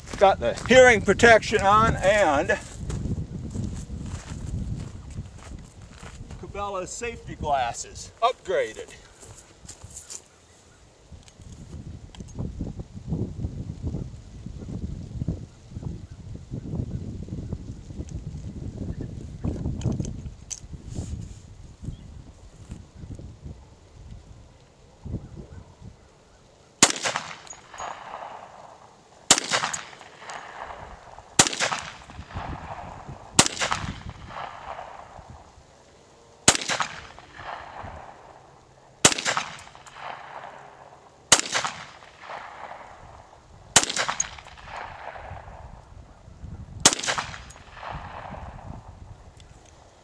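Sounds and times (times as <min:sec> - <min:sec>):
rifle gunshots with echo: 0:26.8 - 0:35.4, 0:36.4 - 0:45.8, 0:46.8 - 0:48.8.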